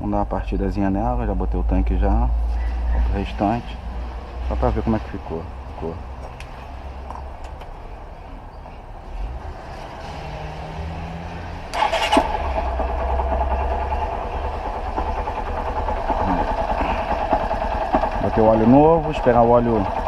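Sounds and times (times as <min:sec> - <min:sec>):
motorcycle engine starting and running: 0:09.5 - 0:20.0.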